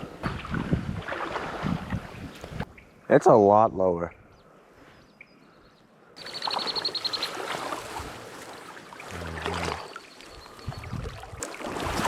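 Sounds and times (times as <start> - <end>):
water sloshing around legs: 6.2 - 12.0.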